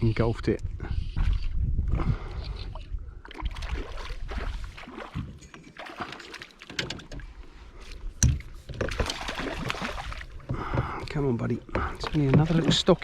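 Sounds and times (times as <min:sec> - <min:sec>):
water sloshing around boat: 0:02.4 - 0:13.0.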